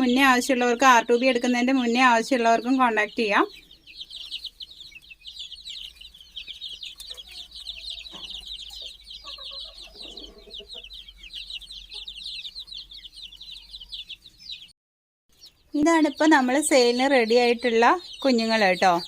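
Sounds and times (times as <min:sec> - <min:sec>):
chicks peeping: 0:00.0 - 0:14.7, 0:15.3 - 0:19.0.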